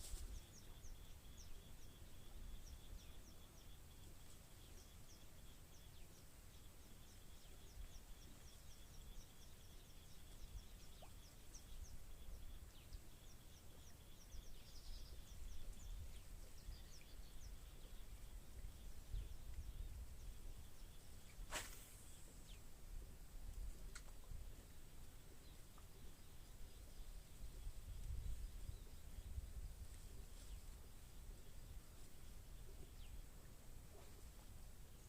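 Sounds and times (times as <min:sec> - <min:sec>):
small bird chirping: 0:00.0 - 0:22.7.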